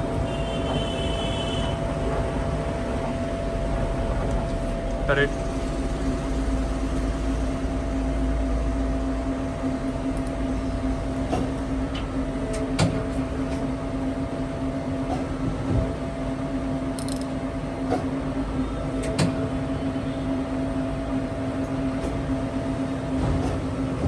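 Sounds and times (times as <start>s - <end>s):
lathe mechanical hum: 0.0s - 24.0s
sharp clicks and knocks: 17.0s - 18.1s.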